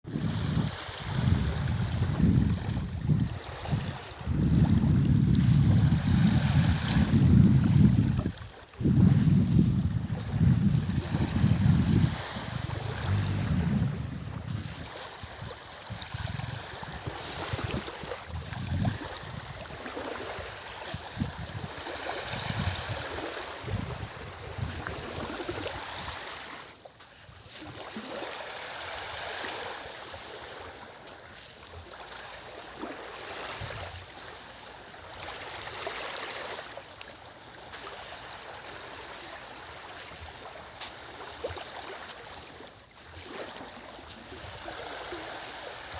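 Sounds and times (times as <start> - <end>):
wind buffeting microphone: 0.1 - 26.3
small waves lapping on shore: 0.1 - 45.9.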